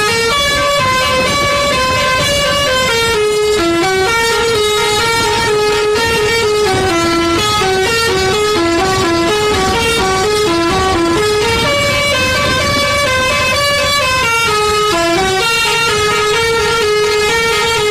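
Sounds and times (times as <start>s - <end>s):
multi-tone air horn melody: 0.0s - 17.9s.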